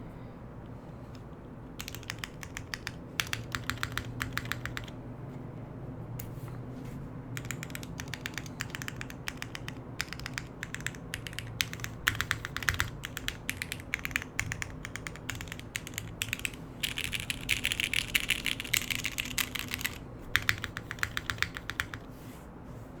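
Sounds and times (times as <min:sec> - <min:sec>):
mechanical keyboard key clacks: 0:01.8 - 0:04.9, 0:07.4 - 0:22.1.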